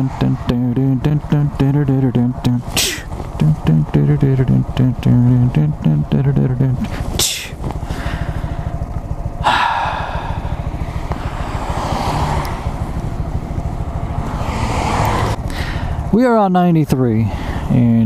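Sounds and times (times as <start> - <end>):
motorcycle engine running: 0.0 - 18.0
wind and road noise: 0.0 - 18.0.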